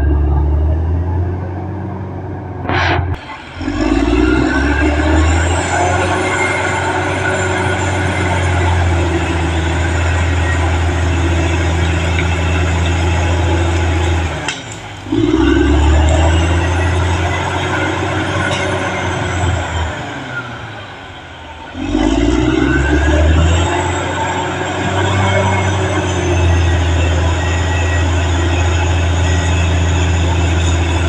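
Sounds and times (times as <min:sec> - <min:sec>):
bulldozer diesel engine under load: 0:00.0 - 0:31.0.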